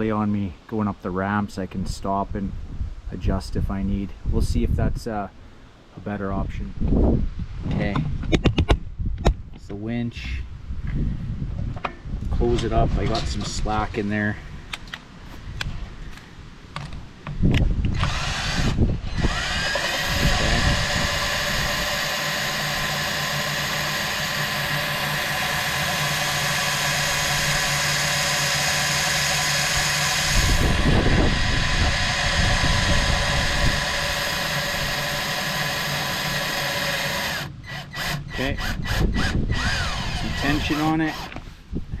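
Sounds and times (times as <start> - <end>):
drill trigger pulls: 17.5 - 41.5
drill motor whine: 17.9 - 41.4.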